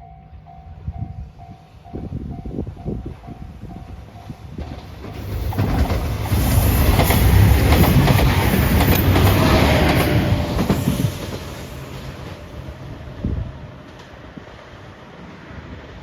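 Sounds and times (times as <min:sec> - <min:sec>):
train passing at speed: 0:00.0 - 0:16.0
wheels clattering over rail joints: 0:04.5 - 0:12.4.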